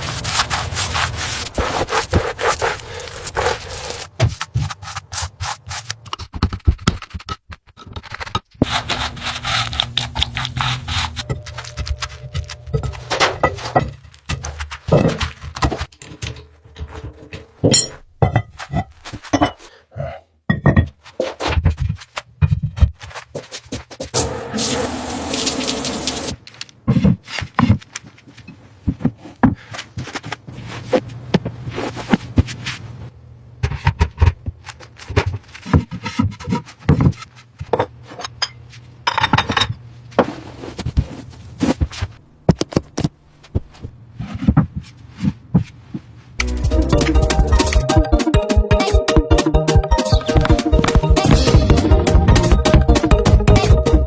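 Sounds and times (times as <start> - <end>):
abrasive rubbing and scraping: 0.0 - 6.4, 7.8 - 17.6.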